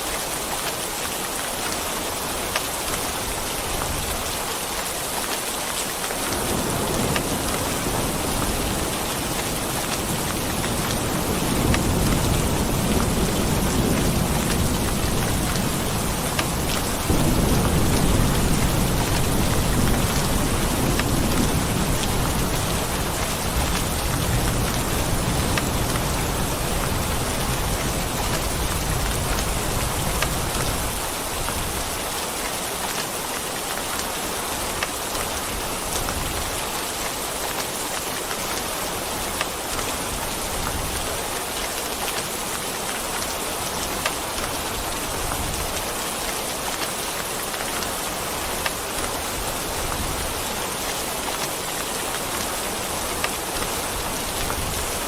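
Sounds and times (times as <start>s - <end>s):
heavy rain falling: 0.0s - 55.0s
low rumble of thunder: 6.2s - 31.0s.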